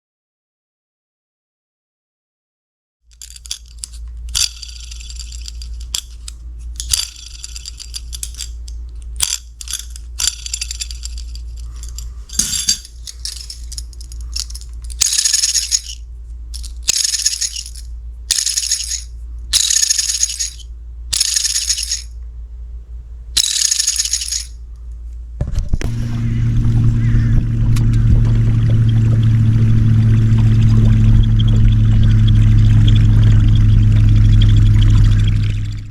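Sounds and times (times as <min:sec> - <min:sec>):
steady low hum: 0:03.1 - 0:35.9
metal blade squeaking: 0:03.2 - 0:16.0.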